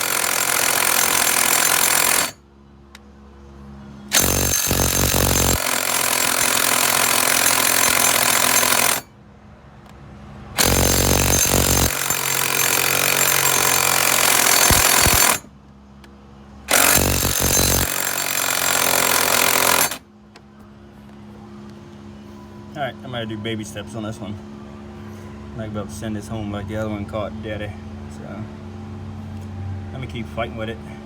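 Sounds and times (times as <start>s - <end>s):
impact wrench hammering: 0.0s - 2.4s, 4.1s - 9.1s, 10.6s - 15.5s, 16.7s - 20.0s.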